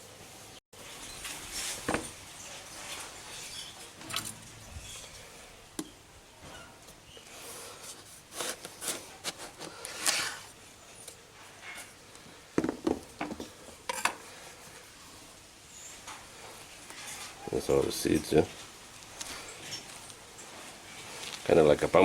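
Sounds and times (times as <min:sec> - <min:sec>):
knife scraping through melon: 0:08.0 - 0:10.5.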